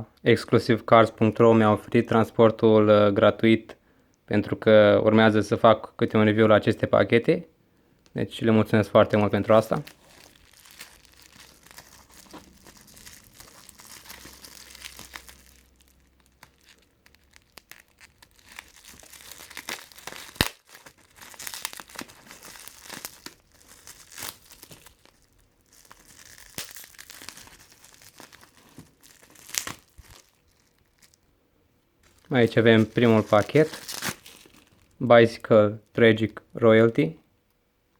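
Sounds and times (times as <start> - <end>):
packaging crinkling and ripping: 9.2 - 31.2, 32.0 - 35.0.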